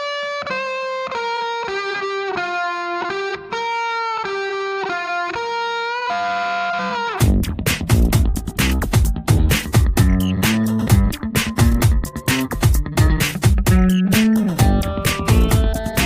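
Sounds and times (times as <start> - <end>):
solo electric guitar melody: 0.0 - 7.3, 10.4 - 16.0
full band with drums: 7.2 - 16.0.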